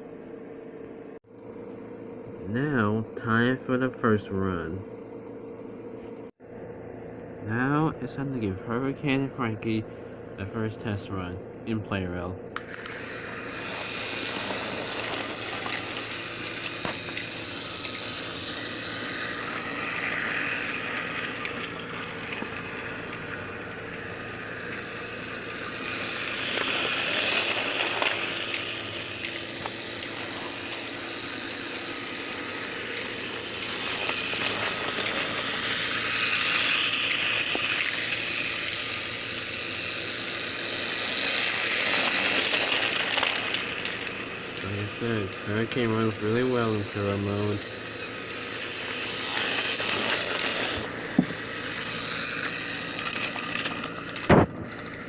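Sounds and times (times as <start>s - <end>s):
toy train motor whirring: 12.6s - 55.0s
toy train wheels rattling: 12.7s - 55.0s.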